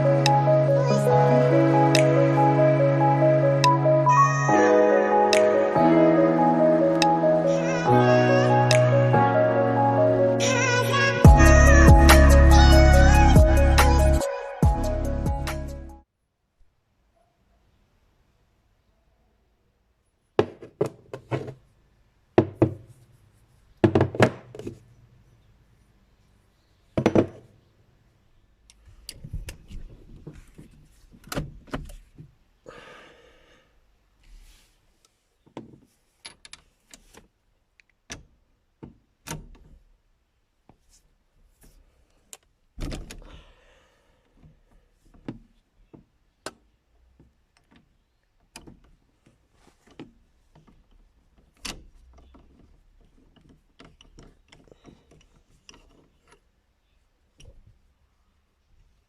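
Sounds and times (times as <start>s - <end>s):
tools clicking and knocking: 35.5s - 37.2s, 49.8s - 56.5s.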